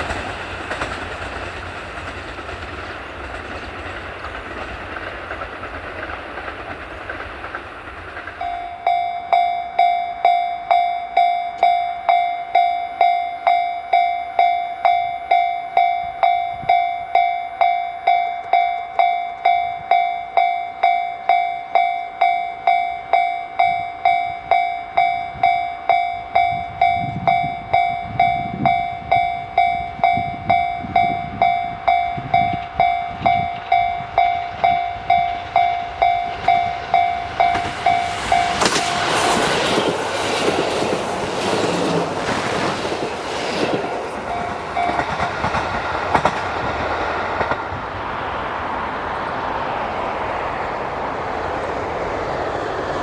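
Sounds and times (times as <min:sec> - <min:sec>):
diesel railcar engine rumble: 0:00.0 - 0:53.0
train wheel noise: 0:00.0 - 0:53.0
level crossing alarm bell ringing: 0:08.4 - 0:39.4, 0:44.2 - 0:45.3.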